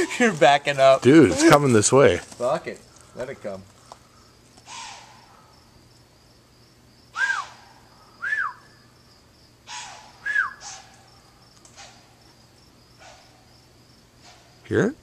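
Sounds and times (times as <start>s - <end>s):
insects chirping: 0.0s - 15.0s
animal making breathy calls: 4.7s - 5.5s, 9.7s - 11.0s.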